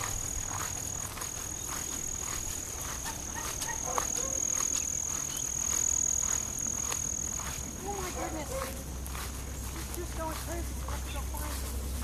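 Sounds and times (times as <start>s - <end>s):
insect chirring whine: 0.0s - 8.1s.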